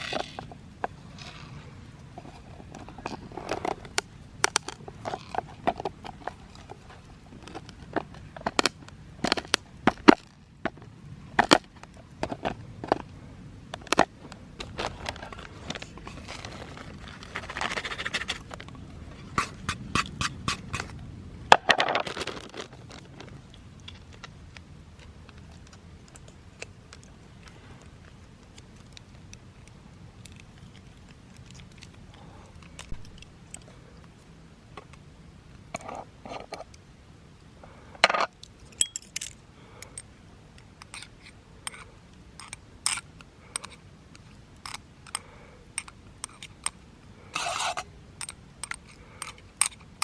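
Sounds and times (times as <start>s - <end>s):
short scraping sounds: 47.3s - 47.9s.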